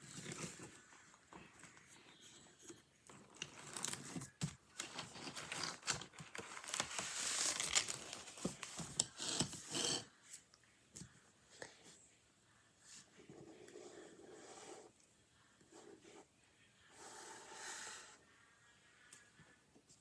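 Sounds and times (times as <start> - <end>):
crinkling rustling handling noise: 3.1 - 9.7.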